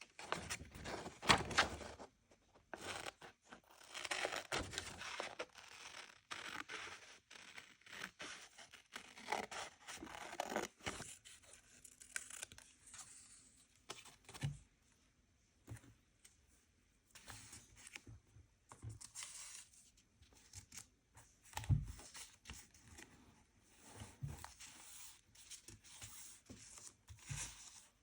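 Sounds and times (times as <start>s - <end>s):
paper rustling: 0.1s - 3.3s.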